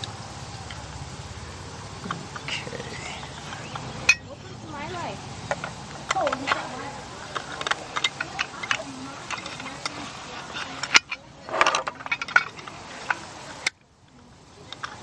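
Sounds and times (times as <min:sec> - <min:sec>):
small metal parts clicking and scraping: 0:01.9 - 0:15.0.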